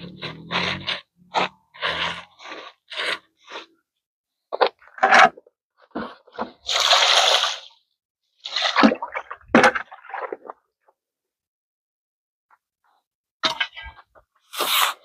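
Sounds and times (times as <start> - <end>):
shovel scraping wet concrete: 0.0 - 3.7, 5.0 - 7.8, 14.5 - 15.0.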